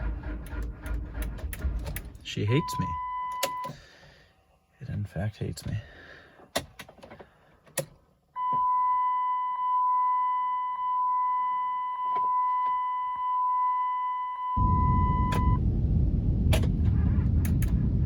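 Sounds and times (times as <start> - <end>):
continuous high electronic beep: 2.4 - 3.7, 8.4 - 15.6.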